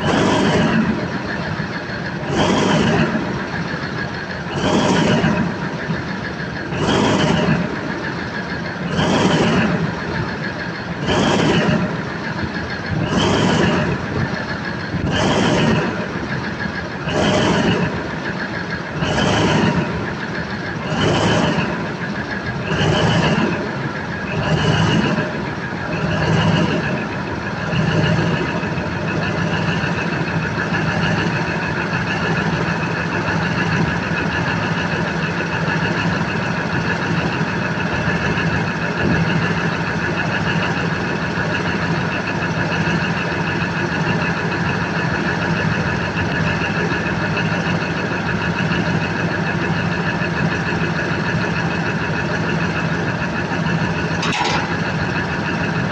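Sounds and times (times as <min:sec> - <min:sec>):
diesel engine idling: 0:00.0 - 0:55.9.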